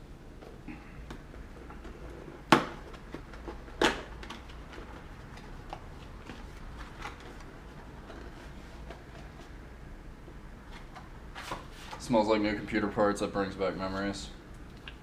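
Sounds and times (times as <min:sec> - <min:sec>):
cardboard and plastic rustling: 0:01.2 - 0:09.6.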